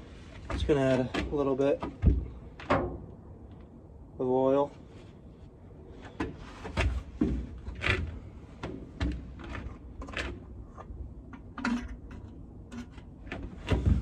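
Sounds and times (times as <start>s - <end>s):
oil jug handling clicks and rattles: 0.4s - 3.2s, 6.0s - 14.0s.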